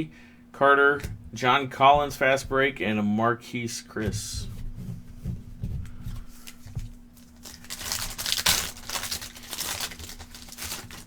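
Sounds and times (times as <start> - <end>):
foil wrapper crinkling and tearing: 7.2 - 11.0.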